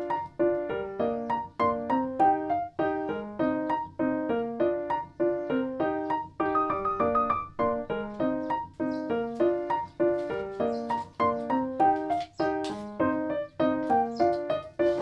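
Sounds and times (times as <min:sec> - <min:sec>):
light piano tune: 0:00.0 - 0:15.0.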